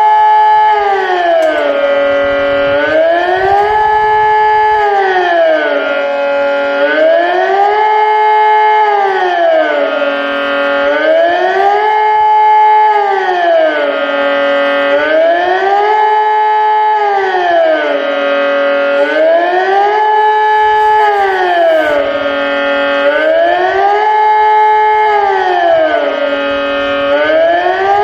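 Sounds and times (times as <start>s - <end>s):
wailing siren: 0.0s - 28.0s.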